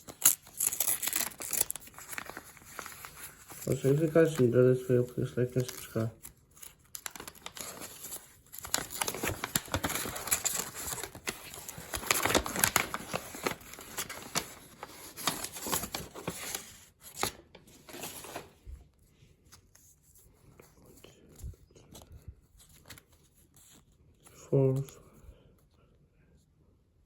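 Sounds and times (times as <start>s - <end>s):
wrapper tearing and crinkling: 0.0s - 4.5s, 5.2s - 18.4s.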